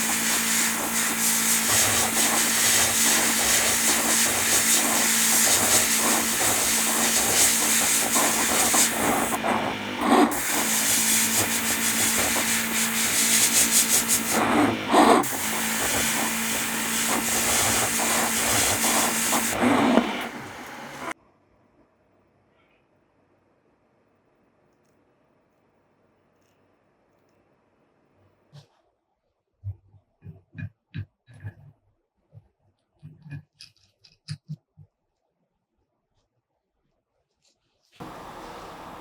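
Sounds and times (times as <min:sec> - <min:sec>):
motor hum: 0:00.0 - 0:21.2, 0:38.0 - 0:39.0
power tool hissing on metal: 0:00.0 - 0:21.2, 0:38.0 - 0:39.0.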